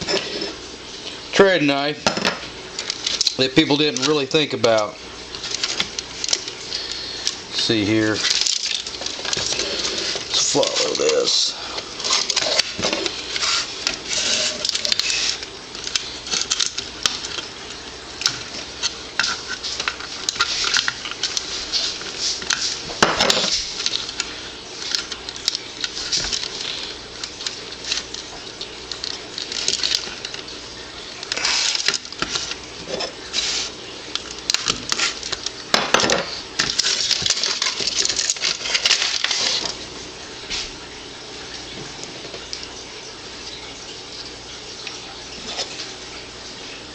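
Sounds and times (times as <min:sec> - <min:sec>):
small clock parts clinking: 0:12.0 - 0:17.4.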